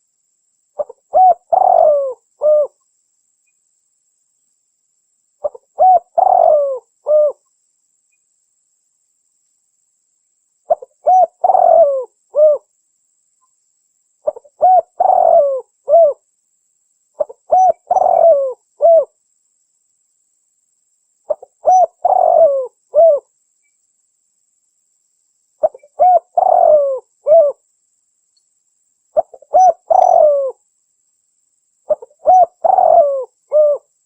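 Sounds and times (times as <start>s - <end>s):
dove cooing: 0.8s - 2.8s, 5.4s - 7.4s, 10.7s - 12.7s, 14.2s - 16.2s, 17.2s - 19.1s, 21.3s - 23.3s, 25.6s - 27.6s, 29.2s - 30.6s, 31.9s - 33.9s.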